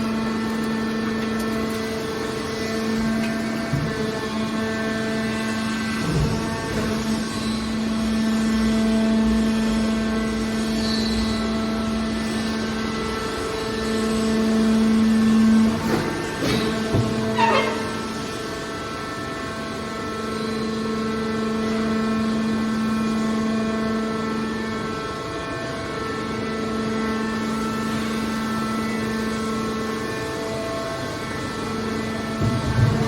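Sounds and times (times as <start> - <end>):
machine motor humming: 0.0 - 10.0, 14.2 - 18.8
short falling squeal: 17.2 - 18.2.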